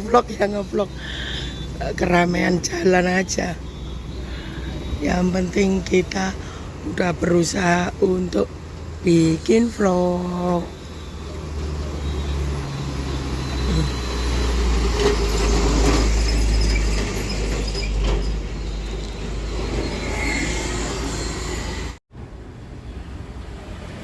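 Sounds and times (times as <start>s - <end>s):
heavy vehicle rumble: 0.0s - 24.0s
road traffic passing: 0.0s - 24.0s.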